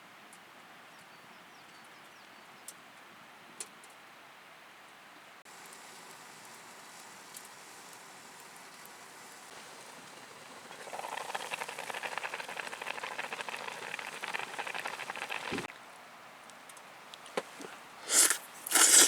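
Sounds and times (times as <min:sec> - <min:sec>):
faint steady hiss: 0:00.0 - 0:19.0
food sizzling in a pan: 0:05.5 - 0:15.7, 0:18.1 - 0:19.0.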